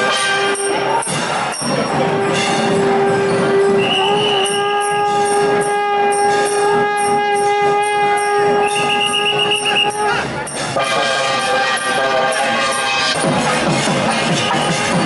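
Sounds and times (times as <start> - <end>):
crowd noise: 0.0 - 15.0
long horn-like note: 2.0 - 10.2.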